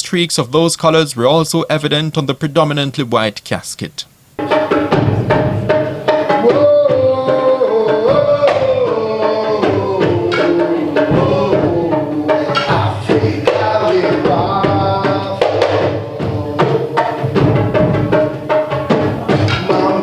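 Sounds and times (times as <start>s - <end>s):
hand drums beating: 4.4s - 20.0s.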